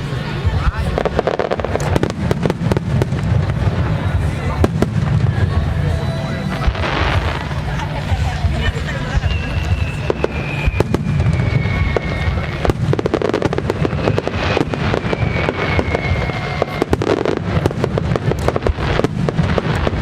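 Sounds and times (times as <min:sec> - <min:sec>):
fireworks booming and crackling: 0:00.0 - 0:20.0
falling firework whistle: 0:04.6 - 0:07.8, 0:08.9 - 0:20.0.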